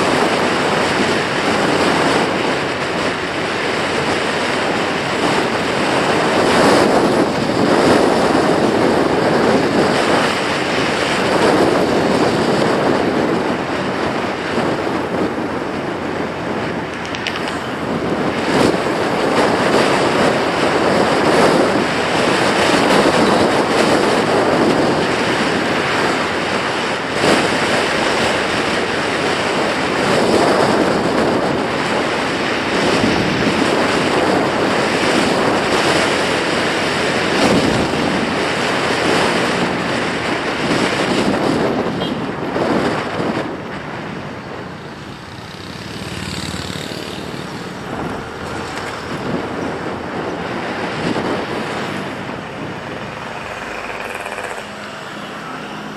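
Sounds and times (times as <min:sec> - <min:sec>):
wind buffeting microphone: 0:00.0 - 0:55.9.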